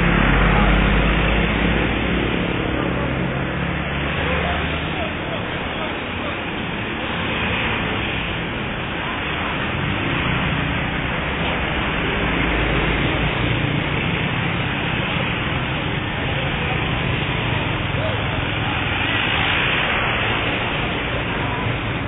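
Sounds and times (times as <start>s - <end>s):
roadside traffic noise: 0.0s - 22.0s.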